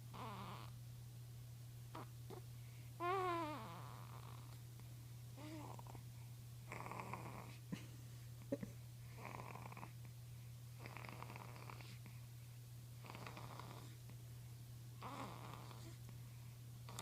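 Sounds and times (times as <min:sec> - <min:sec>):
steady low hum: 0:00.0 - 0:17.0
soft snoring: 0:03.0 - 0:04.6, 0:06.7 - 0:07.6, 0:09.1 - 0:10.0, 0:10.8 - 0:12.2, 0:13.0 - 0:14.0, 0:15.0 - 0:16.1.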